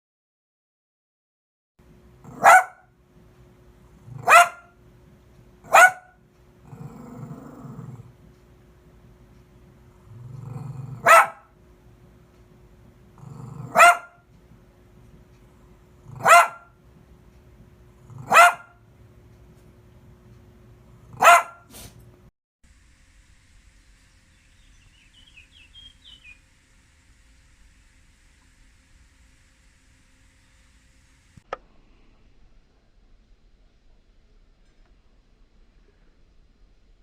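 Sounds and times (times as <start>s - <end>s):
dog barking: 2.2s - 2.9s, 4.1s - 4.8s, 5.6s - 6.2s, 10.8s - 11.5s, 13.5s - 14.2s, 16.1s - 16.7s, 18.1s - 18.8s, 21.1s - 21.8s
dog growling: 6.6s - 8.2s, 9.9s - 11.3s, 13.1s - 14.0s, 16.0s - 16.6s, 17.9s - 18.6s.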